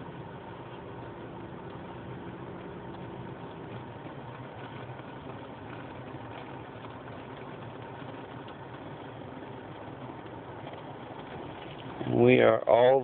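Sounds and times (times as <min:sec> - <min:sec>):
car air conditioning blower: 0:00.0 - 0:13.0
engine idling hum: 0:00.0 - 0:13.0.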